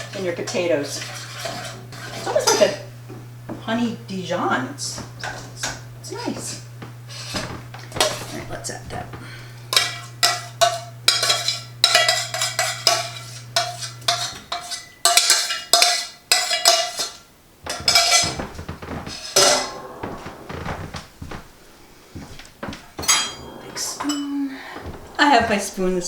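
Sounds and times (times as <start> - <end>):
metal utensil scraping a pot: 0.0 - 2.8, 9.7 - 18.4
low steady hum: 0.0 - 15.2, 17.3 - 26.0.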